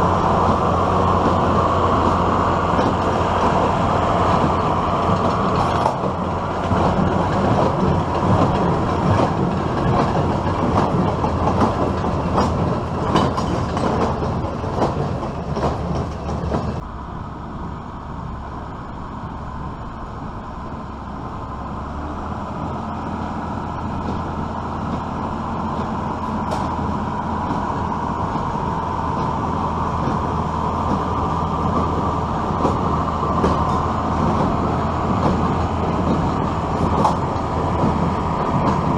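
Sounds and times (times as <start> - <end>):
tractor engine drone: 0.0 - 38.9.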